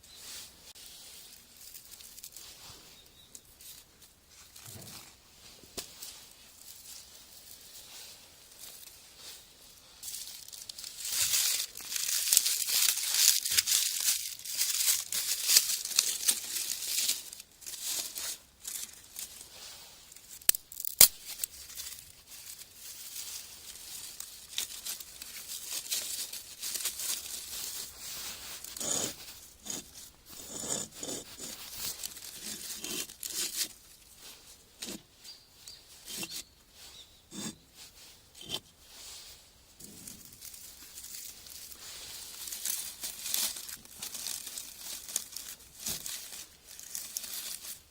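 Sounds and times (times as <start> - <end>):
paper crumpling and tearing: 10.0 - 35.0, 39.8 - 47.9.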